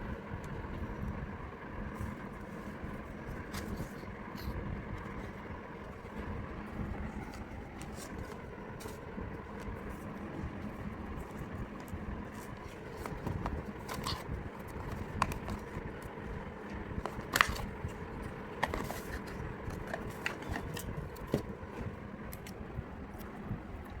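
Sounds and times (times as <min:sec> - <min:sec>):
steady background hum: 0:00.0 - 0:24.0
packaging being handled: 0:02.1 - 0:22.5.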